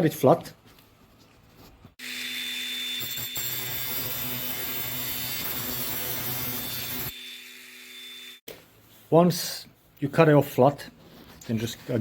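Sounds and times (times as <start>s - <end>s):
angle grinder cutting metal: 2.0s - 8.4s.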